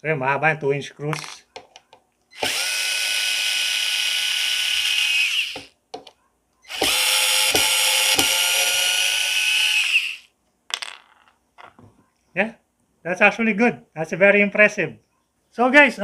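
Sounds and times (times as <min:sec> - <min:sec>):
cordless screwdriver motor whining: 0:02.3 - 0:05.7, 0:06.7 - 0:10.3.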